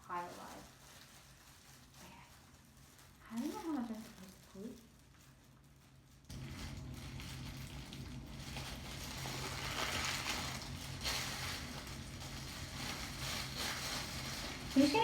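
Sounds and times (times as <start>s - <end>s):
wet hair squishing: 0.1s - 15.0s
steady low hum: 6.0s - 15.0s.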